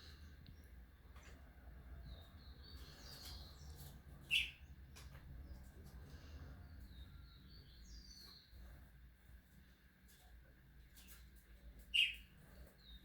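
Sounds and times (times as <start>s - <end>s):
bird chirping: 2.0s - 4.8s, 6.6s - 8.8s, 11.8s - 13.0s.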